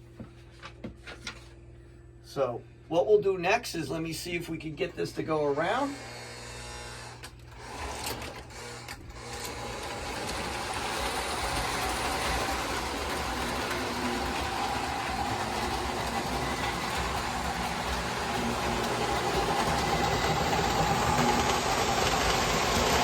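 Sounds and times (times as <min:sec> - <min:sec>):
model train motor whirring: 0:05.6 - 0:23.0.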